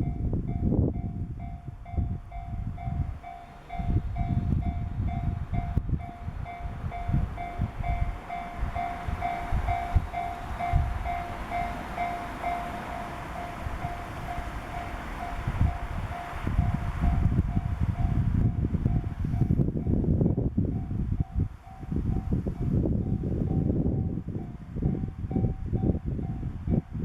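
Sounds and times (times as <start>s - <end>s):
train passing: 0.0s - 27.0s
wind buffeting microphone: 0.0s - 27.0s
level crossing alarm ringing: 3.2s - 16.8s.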